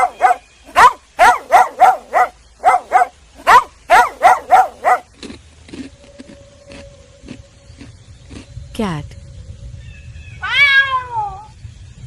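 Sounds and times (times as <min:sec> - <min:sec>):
dog barking: 0:00.0 - 0:05.1.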